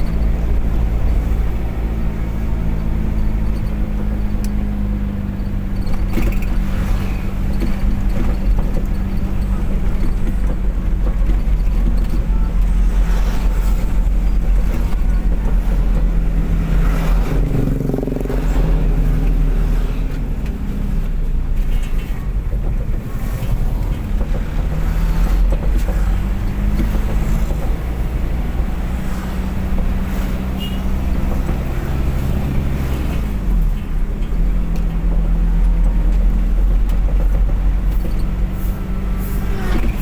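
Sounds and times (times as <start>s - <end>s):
road and wind noise: 0.0s - 40.0s
vehicle engine drone: 0.0s - 40.0s.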